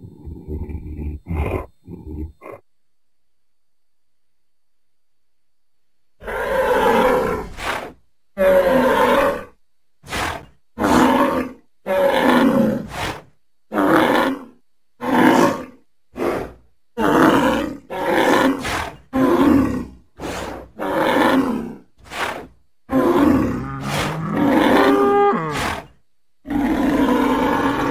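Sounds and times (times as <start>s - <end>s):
bull bellowing: 0.0s - 2.6s, 13.7s - 27.9s.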